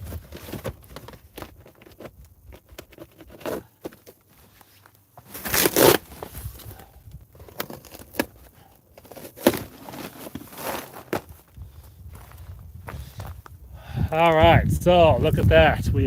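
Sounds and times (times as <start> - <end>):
packaging crinkling: 5.2 - 6.3
cardboard box tearing: 5.3 - 6.4, 7.5 - 11.3.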